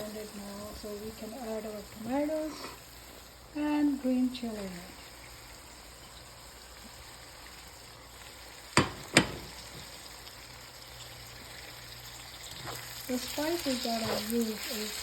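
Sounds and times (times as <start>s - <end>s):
meat sizzling in a wok: 0.0s - 15.0s.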